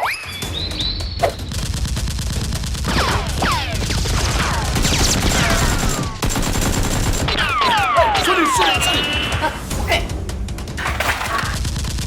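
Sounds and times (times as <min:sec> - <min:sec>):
falling whistling sounds: 0:00.0 - 0:01.4
rapid gunfire: 0:00.6 - 0:09.4, 0:10.5 - 0:12.0.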